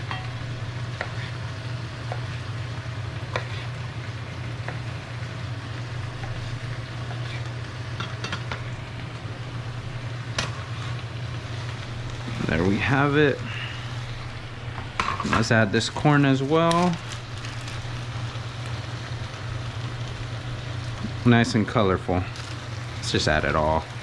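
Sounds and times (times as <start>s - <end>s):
food sizzling in a pan: 0.0s - 24.0s
low hum: 0.0s - 24.0s.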